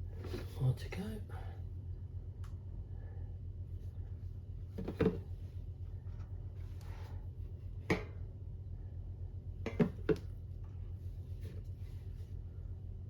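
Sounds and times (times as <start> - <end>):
steady low hum: 0.0 - 13.0
plastic container clicks and knocks: 9.7 - 10.3.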